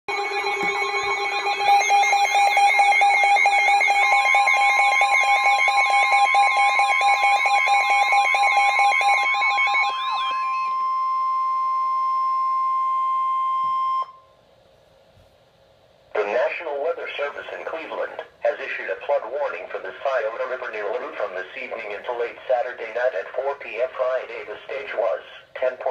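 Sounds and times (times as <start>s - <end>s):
steady beeping tones: 0.1s - 14.2s
warbling electronic alarm tones: 0.1s - 14.3s
steady warning tone: 0.1s - 14.4s.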